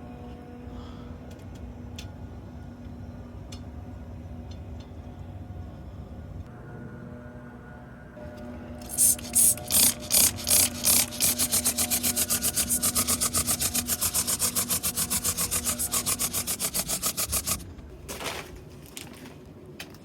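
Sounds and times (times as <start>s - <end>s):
sprayer hissing: 8.8s - 17.6s.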